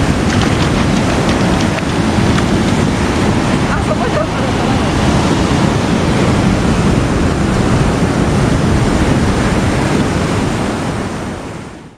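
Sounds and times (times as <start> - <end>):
waves rushing: 0.0 - 11.9
wind buffeting microphone: 0.0 - 11.9.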